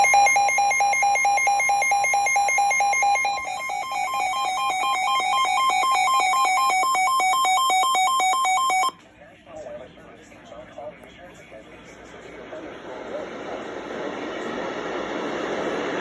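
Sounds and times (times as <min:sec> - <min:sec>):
rapid pulsed beeps: 0:00.0 - 0:08.9
steady electronic beep: 0:00.0 - 0:08.9
two-pitch alternating beeping: 0:00.0 - 0:08.9.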